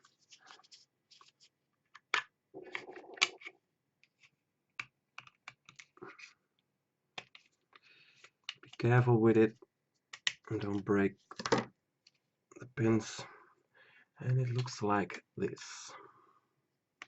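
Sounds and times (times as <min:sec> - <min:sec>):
plastic clicks: 0:01.9 - 0:06.3, 0:10.1 - 0:12.2.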